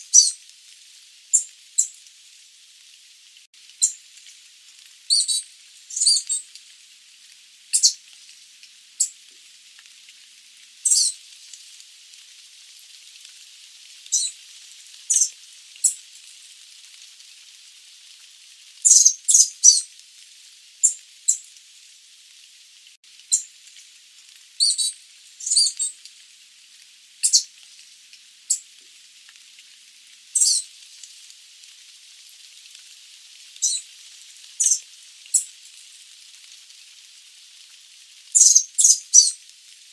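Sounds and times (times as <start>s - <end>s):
faint hiss: 0.0s - 39.9s
bird giving high-pitched calls: 0.1s - 0.4s, 5.1s - 6.4s, 7.8s - 8.0s, 10.9s - 11.1s, 18.9s - 19.8s, 24.6s - 25.9s, 27.2s - 27.5s, 30.4s - 30.6s, 33.6s - 33.8s, 38.4s - 39.3s.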